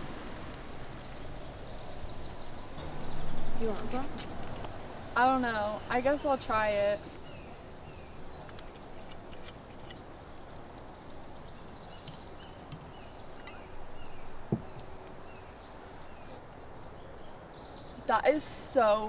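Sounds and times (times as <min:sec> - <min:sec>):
birds chirping: 0:00.0 - 0:19.0
outdoor background noise: 0:00.0 - 0:19.0.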